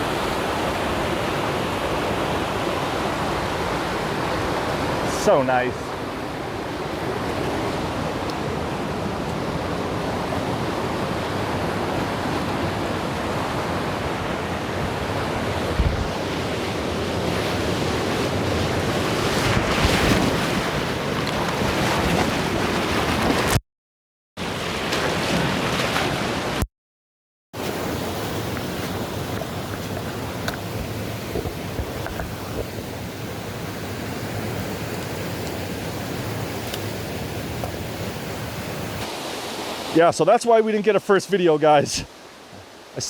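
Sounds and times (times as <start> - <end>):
waterfall rushing: 4.1 - 6.4.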